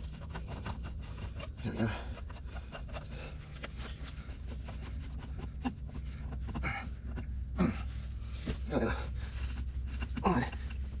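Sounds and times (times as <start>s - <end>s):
small clicks and rubbing: 0.0s - 7.3s.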